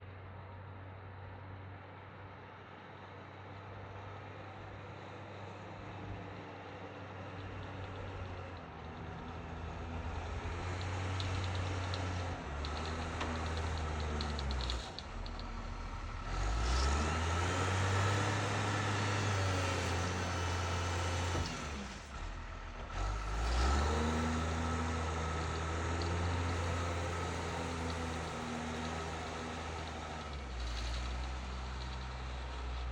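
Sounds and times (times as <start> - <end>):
loader engine revving: 7.2 - 32.9.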